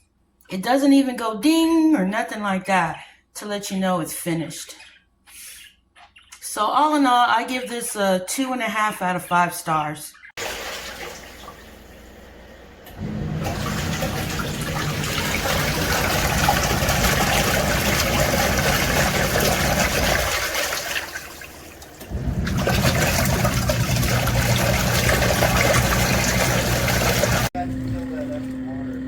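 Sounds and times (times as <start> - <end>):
water gushing in washing machine: 10.4 - 29.0.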